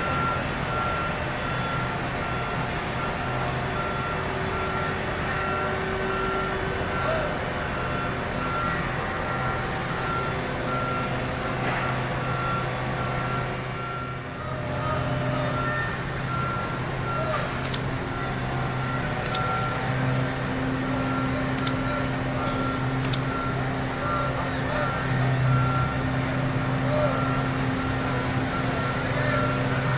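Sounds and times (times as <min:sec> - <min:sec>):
reversing alarm beeping: 0:00.0 - 0:29.9
engine humming: 0:02.8 - 0:29.9
sharp clicks: 0:17.6 - 0:17.9, 0:19.2 - 0:19.5, 0:21.6 - 0:21.8, 0:23.0 - 0:23.3.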